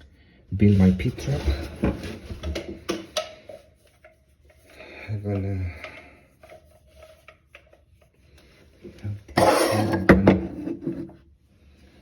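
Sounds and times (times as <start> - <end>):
pipe parts rustling clatter: 0.7 - 10.0.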